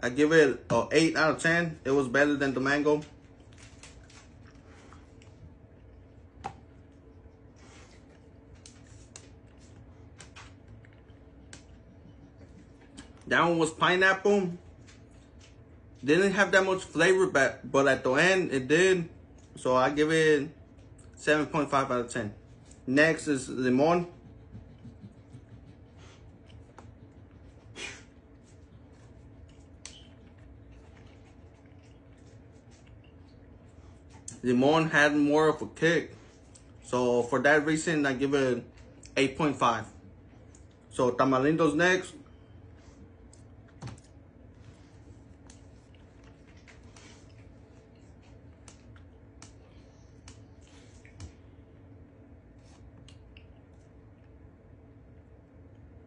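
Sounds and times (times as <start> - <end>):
person chewing gummy candy: 29.4 - 33.4.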